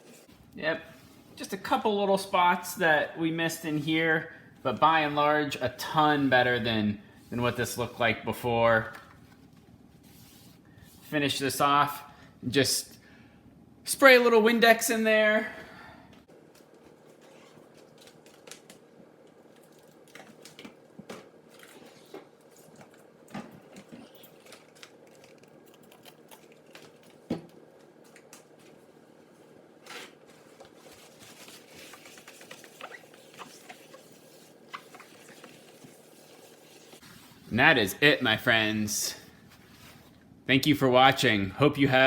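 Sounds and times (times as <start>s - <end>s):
paper towel rubbing on glass: 31.6s - 37.6s.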